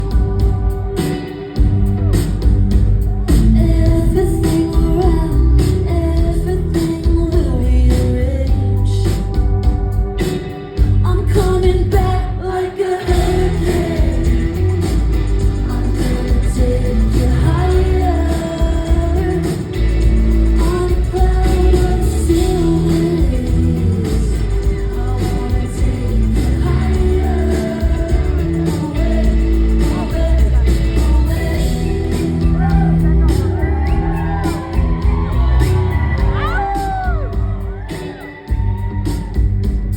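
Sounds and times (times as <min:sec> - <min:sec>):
live pop rock band: 0:00.0 - 0:39.9
lead singer singing: 0:03.2 - 0:09.5, 0:11.0 - 0:38.6.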